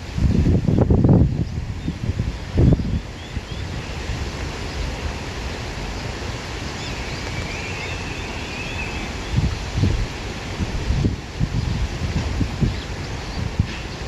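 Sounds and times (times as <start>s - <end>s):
wind blowing through grass: 0.0s - 14.0s
wind buffeting microphone: 0.0s - 14.0s.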